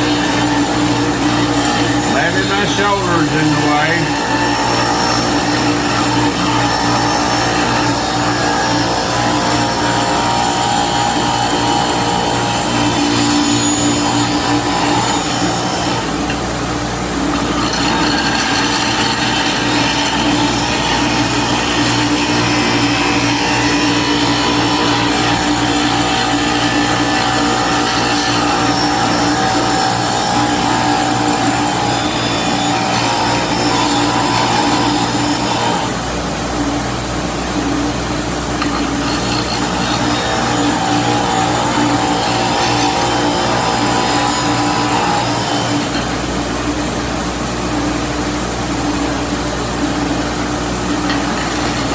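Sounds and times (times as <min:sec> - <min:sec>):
bench grinder motor hum: 0:00.0 - 0:16.4, 0:17.2 - 0:36.0, 0:38.6 - 0:46.3
metal grinding against wheel: 0:17.2 - 0:29.3.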